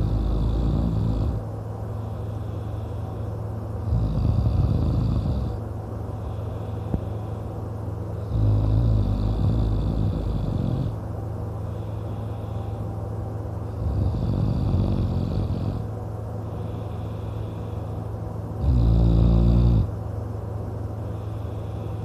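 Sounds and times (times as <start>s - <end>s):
man snoring loudly: 0.0s - 1.4s, 3.8s - 5.6s, 8.2s - 11.0s, 13.7s - 15.9s, 18.6s - 19.9s
quiet breathing: 0.0s - 22.0s.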